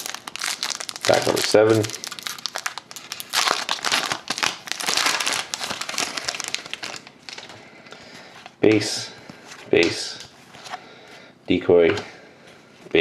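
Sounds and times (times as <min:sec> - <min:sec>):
wrapper tearing and crinkling: 0:00.0 - 0:07.5.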